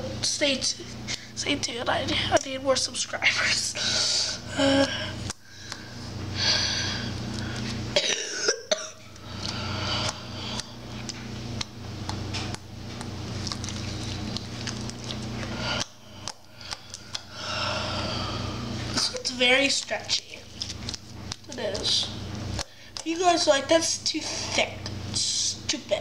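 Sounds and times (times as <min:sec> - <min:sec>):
slime squelches: 0:09.3 - 0:17.4.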